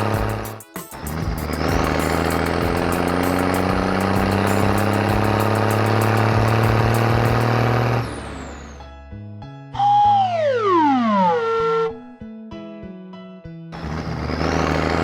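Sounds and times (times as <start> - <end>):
cartoon heavy vehicle engine running: 0.0 - 8.8, 9.8 - 11.7, 13.8 - 15.0.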